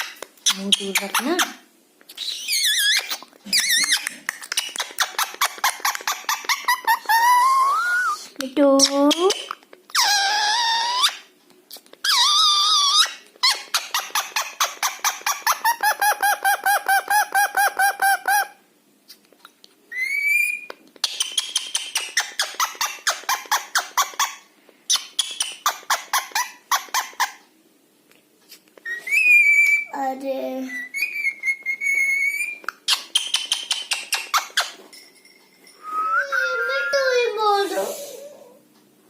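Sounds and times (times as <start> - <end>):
parrot chattering with trill: 0.0 - 8.1, 8.8 - 11.3, 12.0 - 18.6, 20.0 - 27.4, 30.7 - 34.8, 36.1 - 37.6
parrot squawking: 0.0 - 8.2, 8.8 - 11.3, 12.0 - 18.6, 30.7 - 34.8, 35.9 - 37.6
parrot whistle: 6.7 - 8.2, 19.9 - 21.4, 28.8 - 29.9, 30.7 - 32.6, 35.8 - 37.3.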